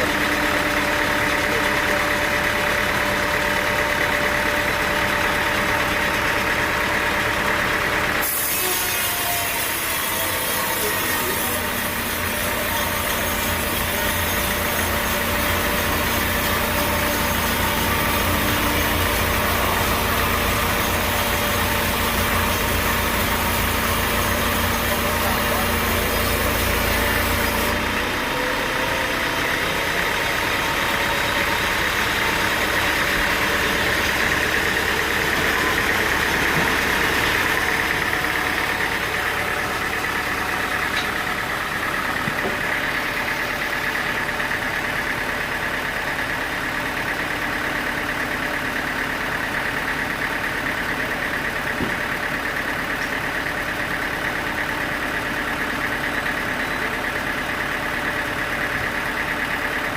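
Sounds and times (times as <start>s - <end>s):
high machine whine: 0.0s - 44.7s
sawmill engine running: 0.0s - 59.9s.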